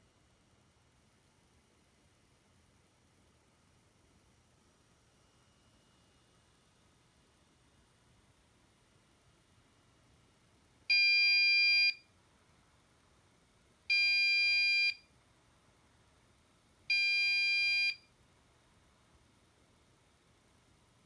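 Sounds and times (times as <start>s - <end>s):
high-pitched buzzer beeps: 10.9s - 12.0s, 13.9s - 15.0s, 16.9s - 18.0s.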